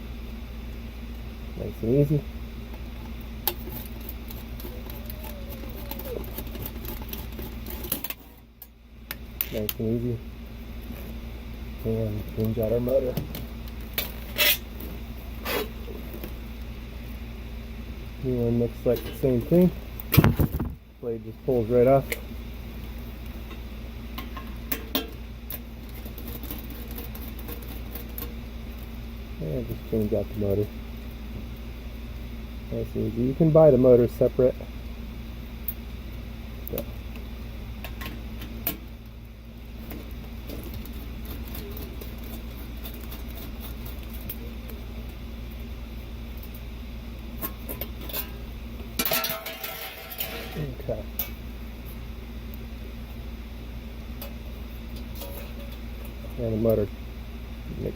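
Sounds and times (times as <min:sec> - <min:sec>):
steady low hum: 0:00.0 - 0:57.9
metal fan parts clicking and clattering: 0:02.7 - 0:09.9, 0:18.7 - 0:20.7, 0:24.2 - 0:28.9, 0:37.8 - 0:45.6, 0:47.3 - 0:52.0, 0:54.2 - 0:56.4.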